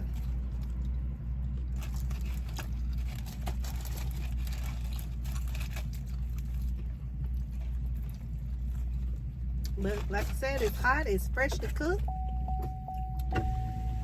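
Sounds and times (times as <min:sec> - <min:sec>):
eating and wrapping crackles: 0:00.0 - 0:12.0
car cabin hum: 0:06.6 - 0:14.0.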